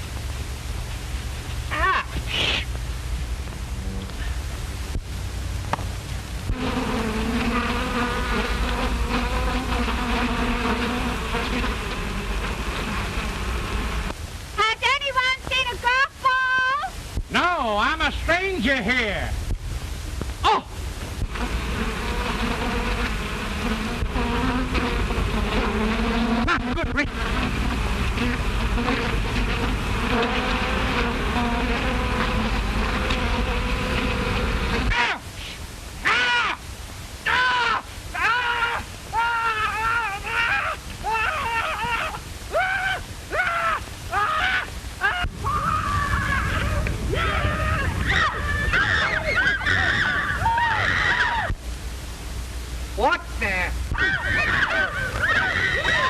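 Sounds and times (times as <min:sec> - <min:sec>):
bee buzzing: 0:06.4 - 0:14.2, 0:21.2 - 0:35.0.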